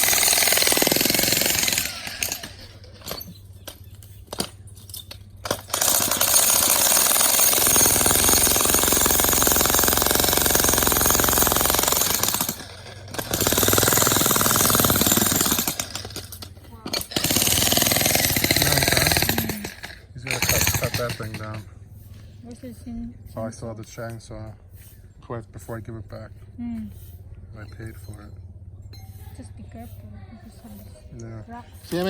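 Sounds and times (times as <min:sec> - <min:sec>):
jackhammer breaking rock: 0:00.0 - 0:03.3, 0:05.4 - 0:21.6.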